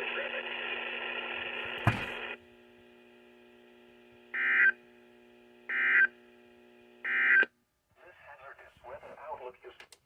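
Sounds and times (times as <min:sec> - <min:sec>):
radio announcement voice: 0:00.0 - 0:01.4, 0:08.0 - 0:10.0
faint steady hum: 0:00.1 - 0:09.8.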